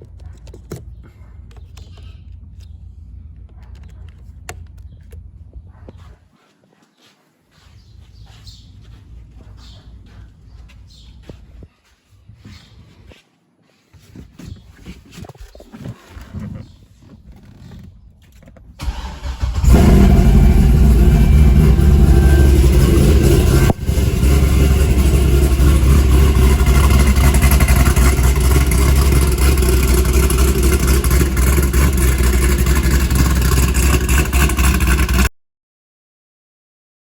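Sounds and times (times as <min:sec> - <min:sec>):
car engine starting and running: 0:18.8 - 0:35.3.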